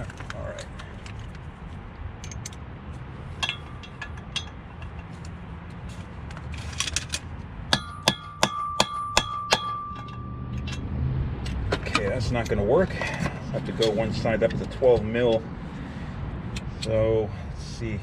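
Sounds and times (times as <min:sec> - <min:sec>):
tools clinking: 0:02.2 - 0:02.6, 0:03.3 - 0:05.4, 0:06.3 - 0:14.1
hammer striking metal: 0:07.7 - 0:10.8
metal ringing tone: 0:07.7 - 0:10.9.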